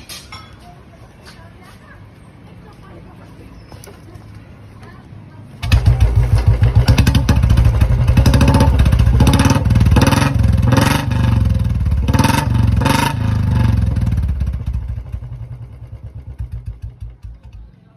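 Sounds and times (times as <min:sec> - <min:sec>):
motorcycle engine revving: 0:05.6 - 0:17.9.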